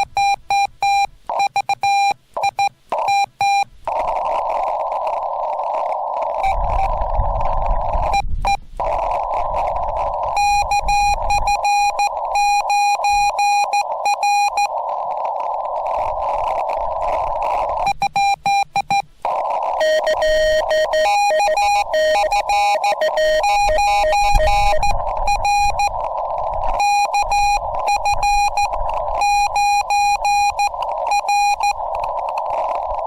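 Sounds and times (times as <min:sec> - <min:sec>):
morse code tone: 0:00.0 - 0:04.6, 0:06.3 - 0:14.9, 0:15.9 - 0:33.0
radio receiver hiss: 0:00.0 - 0:33.0
lower-pitched morse tone: 0:06.3 - 0:14.8, 0:19.3 - 0:32.7.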